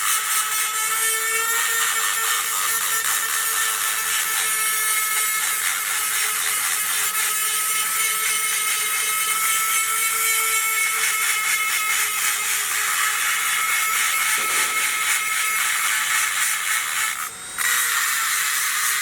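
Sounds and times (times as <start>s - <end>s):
angle grinder grinding metal: 0.0s - 19.0s.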